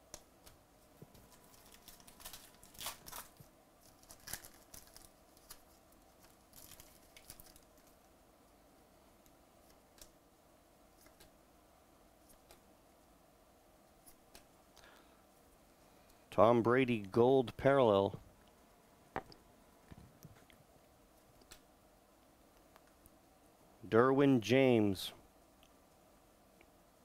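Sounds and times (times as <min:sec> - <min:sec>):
trading cards and wrappers rustling: 0:00.4 - 0:08.0.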